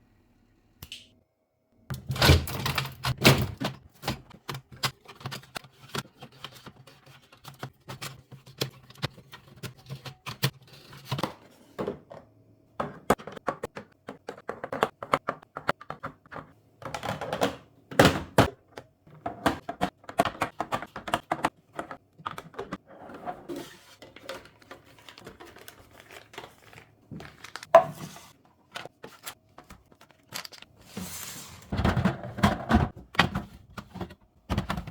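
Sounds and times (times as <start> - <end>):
plastic crinkling: 24.6 - 27.8.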